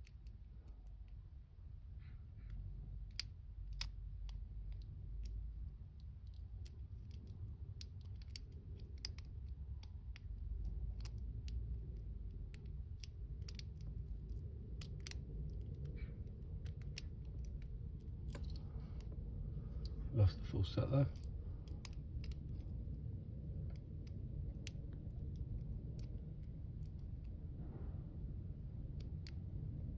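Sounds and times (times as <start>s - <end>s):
low handling rumble: 0.0s - 29.9s
lock pick metallic clicks: 3.0s - 5.4s, 6.0s - 11.6s, 12.5s - 19.1s, 21.1s - 22.6s.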